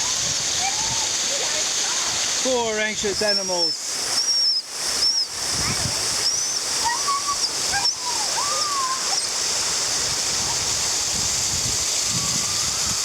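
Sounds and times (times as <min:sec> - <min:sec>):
waterfall rushing: 0:00.0 - 0:13.0
dog whining: 0:06.2 - 0:09.5.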